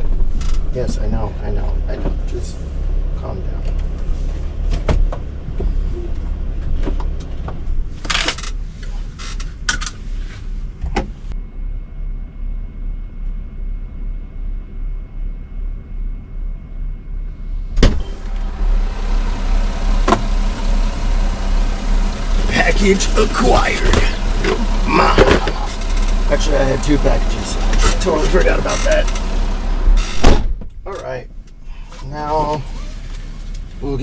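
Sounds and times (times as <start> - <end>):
van engine rumbling: 0.0 - 34.0
loud sharp thump: 17.8 - 18.3, 30.1 - 30.8.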